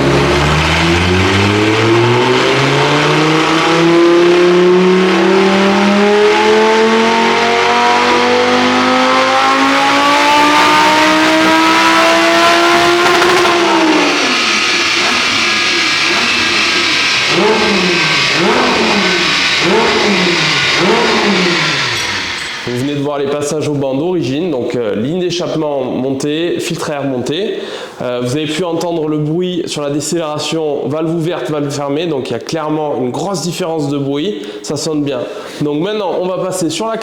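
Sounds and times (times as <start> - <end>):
car engine revving at full throttle: 0.0 - 22.9.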